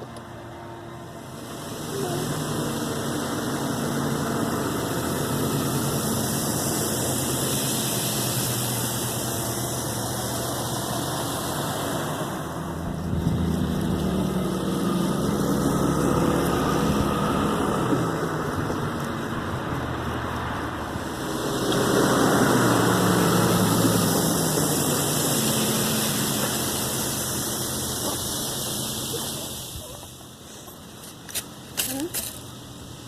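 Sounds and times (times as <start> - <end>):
vehicle engine running: 0.0 - 33.0.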